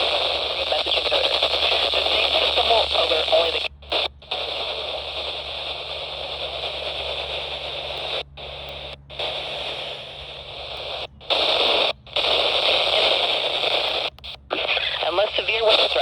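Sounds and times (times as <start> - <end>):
broadcast voice: 0.0 - 5.0, 12.6 - 16.0
radio static hiss: 0.0 - 16.0.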